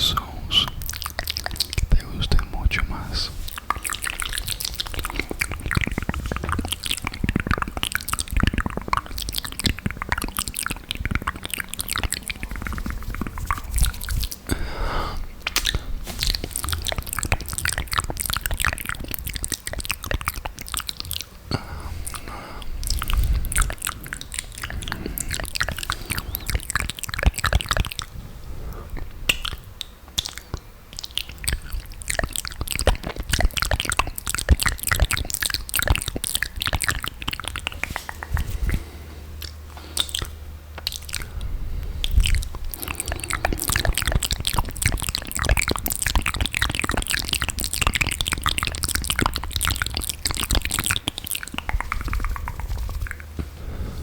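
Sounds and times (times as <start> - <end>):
tongue clicks: 0.0 - 14.7, 15.4 - 28.1, 28.7 - 53.6
wet lip smacks: 0.0 - 14.7, 15.4 - 28.1, 28.8 - 54.0
saliva pops: 15.4 - 20.5.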